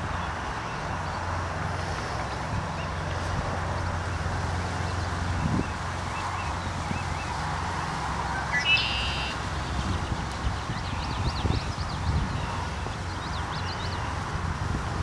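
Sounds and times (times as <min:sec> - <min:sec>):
short rising bird call: 0:08.4 - 0:09.4
quick high bird chirps: 0:08.5 - 0:09.4.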